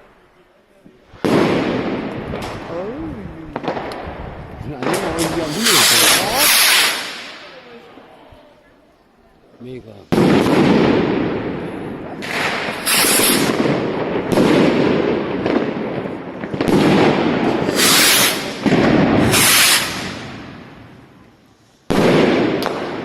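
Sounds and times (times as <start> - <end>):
firework bangs with echo: 1.2 - 2.7, 3.5 - 7.8, 10.1 - 21.1, 21.9 - 23.0
firework crackling hiss: 5.0 - 8.0, 12.2 - 14.0, 17.4 - 21.1.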